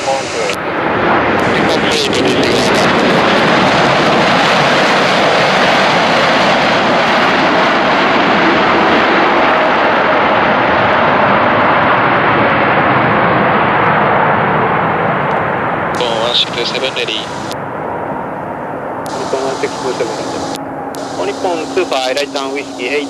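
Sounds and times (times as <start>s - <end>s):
jet engines roaring: 0.0s - 23.0s.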